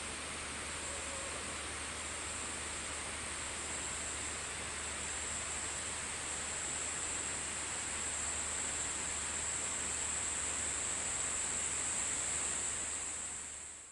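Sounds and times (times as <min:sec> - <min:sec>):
continuous high-pitched ring: 0:00.7 - 0:02.4.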